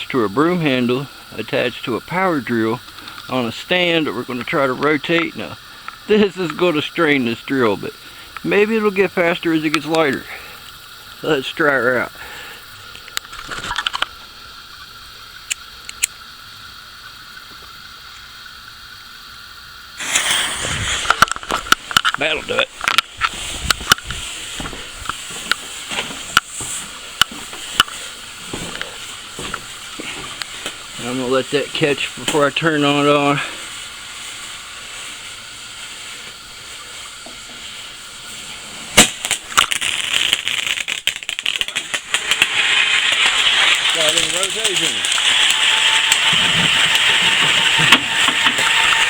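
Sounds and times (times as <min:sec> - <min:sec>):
firework fountain hissing and popping: 0:00.0 - 0:49.0
faint clicks: 0:02.8 - 0:03.3, 0:05.1 - 0:06.6, 0:12.9 - 0:16.2.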